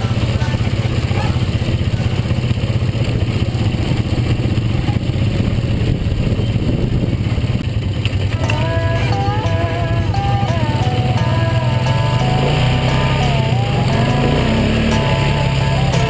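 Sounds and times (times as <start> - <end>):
atv engine running: 0.0 - 16.0
melody: 8.3 - 16.0.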